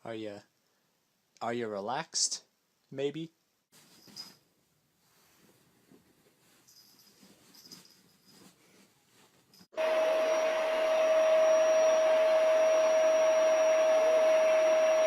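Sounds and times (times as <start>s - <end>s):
appliance motor whining: 9.8s - 15.0s.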